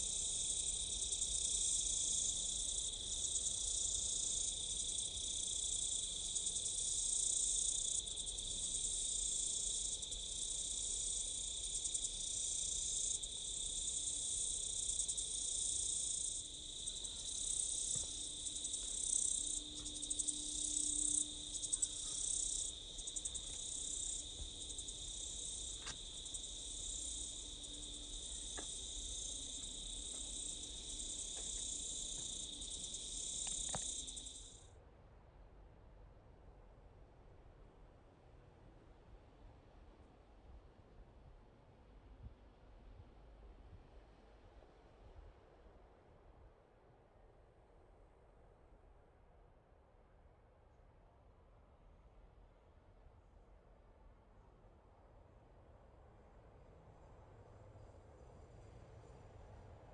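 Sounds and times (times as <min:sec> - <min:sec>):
insects chorus trilling: 0:00.0 - 0:34.6.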